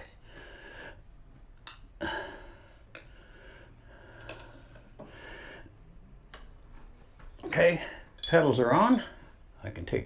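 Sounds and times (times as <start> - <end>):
light metal clinks: 8.2 - 9.3.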